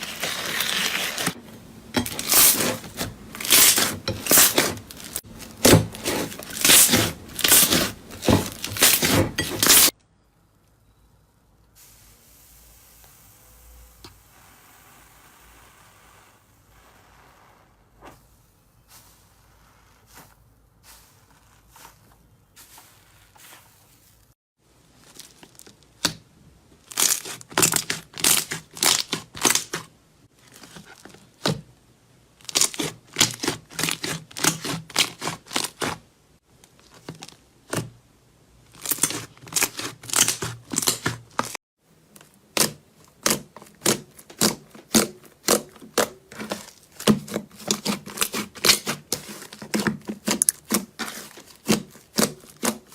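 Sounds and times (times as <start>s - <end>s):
slime crackling and squelching: 2.0s - 10.0s, 18.2s - 26.2s, 26.8s - 31.4s, 38.7s - 52.9s.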